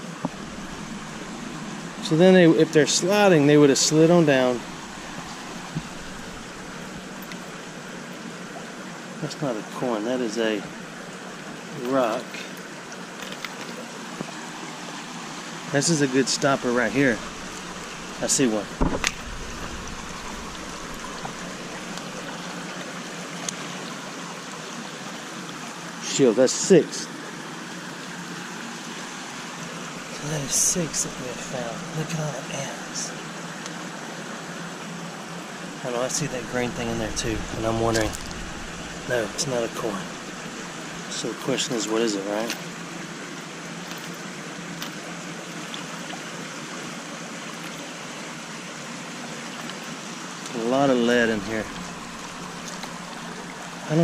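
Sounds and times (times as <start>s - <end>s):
creek water trickling: 0.0s - 54.0s.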